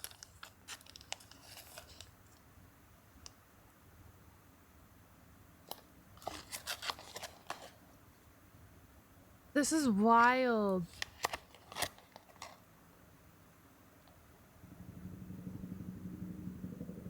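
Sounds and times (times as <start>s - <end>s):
plastic packaging crinkling: 0.0s - 2.1s, 5.7s - 7.8s, 10.9s - 12.6s.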